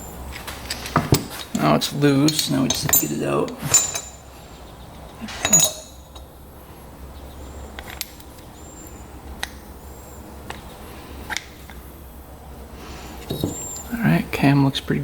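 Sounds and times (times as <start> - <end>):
metal parts clinking: 0.6 - 4.3, 5.2 - 6.2, 13.3 - 13.9.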